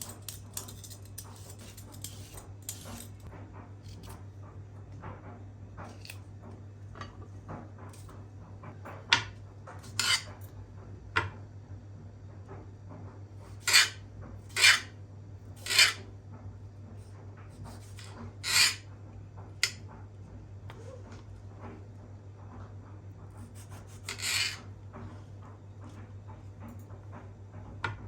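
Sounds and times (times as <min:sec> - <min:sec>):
kitchenware clinking: 0:00.0 - 0:03.3
utensil scraping a dish: 0:00.0 - 0:04.1, 0:09.8 - 0:10.4, 0:13.5 - 0:14.9, 0:15.6 - 0:16.0, 0:17.6 - 0:18.9, 0:23.4 - 0:25.2.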